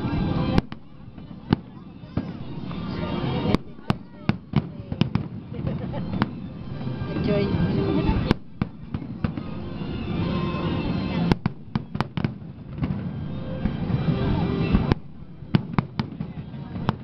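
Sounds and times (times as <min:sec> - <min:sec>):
fireworks bangs: 0:00.0 - 0:17.0
steady background din: 0:00.0 - 0:17.0.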